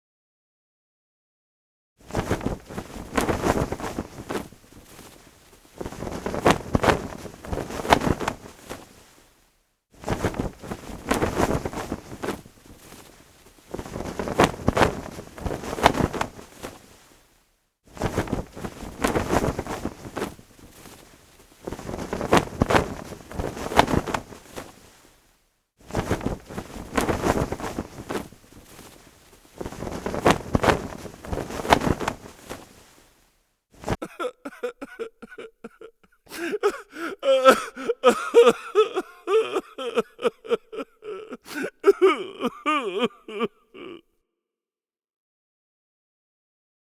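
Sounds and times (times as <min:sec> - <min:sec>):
flag flapping in wind: 0:02.0 - 0:09.4, 0:10.0 - 0:34.0.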